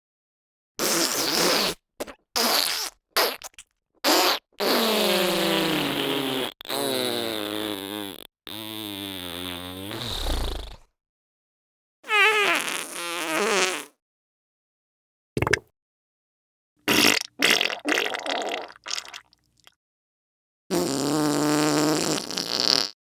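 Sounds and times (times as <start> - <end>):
wet farts: 0.8 - 10.9, 12.1 - 13.9, 16.9 - 19.3, 20.7 - 23.0.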